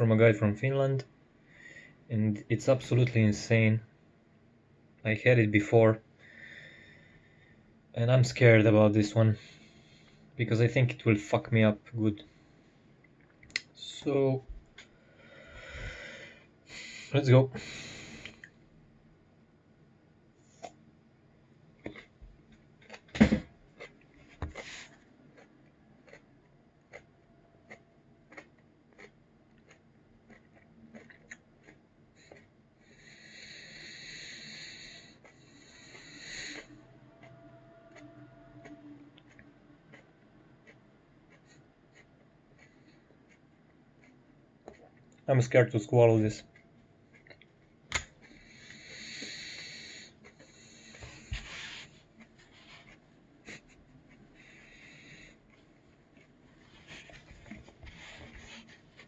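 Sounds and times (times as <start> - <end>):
man breathing hard through mouth: 15.0 - 18.5, 48.3 - 51.5
wet chewing and mouth clicks: 23.7 - 32.6, 37.2 - 45.3, 46.4 - 49.4.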